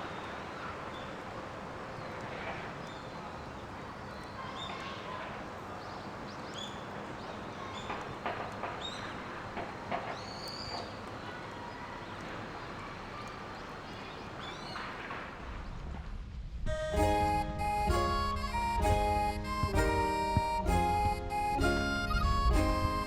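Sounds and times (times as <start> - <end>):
light clicks: 7.7 - 15.4.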